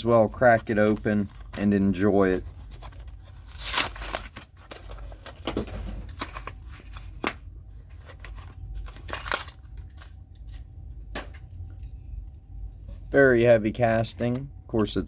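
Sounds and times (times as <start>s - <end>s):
cardboard tearing: 0.1s - 10.1s.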